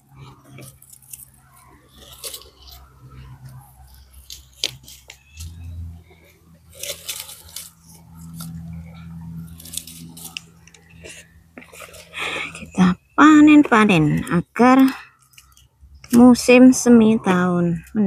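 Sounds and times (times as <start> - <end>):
low steady hum: 0.0 - 18.0
dry leaves crunching: 0.4 - 12.8.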